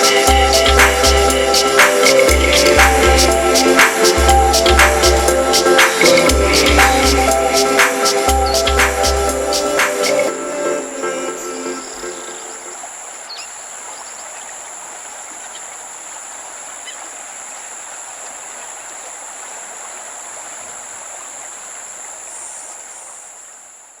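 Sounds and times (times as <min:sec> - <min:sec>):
high-pitched insect drone: 0:00.0 - 0:23.5
stream rushing: 0:00.0 - 0:24.0
faint bird chirps: 0:11.7 - 0:24.0.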